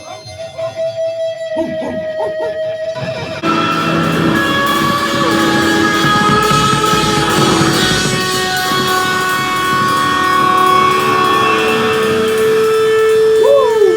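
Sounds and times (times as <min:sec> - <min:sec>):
guitar picking notes: 0:03.4 - 0:13.9.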